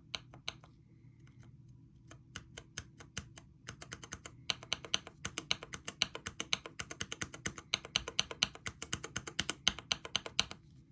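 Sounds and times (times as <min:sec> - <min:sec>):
fast mechanical keyboard typing: 0:02.4 - 0:10.6.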